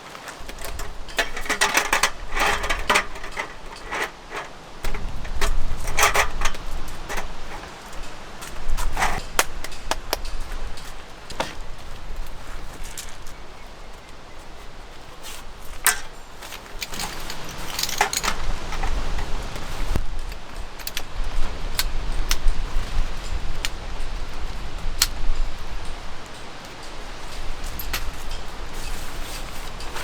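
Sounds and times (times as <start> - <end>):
objects clinking and knocking: 0.1 - 11.6, 15.8 - 19.4
wind rumble on microphone: 0.4 - 30.0.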